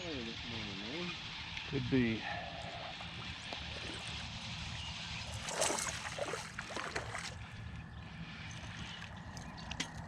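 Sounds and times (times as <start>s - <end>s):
water lapping against boat: 5.2s - 7.6s.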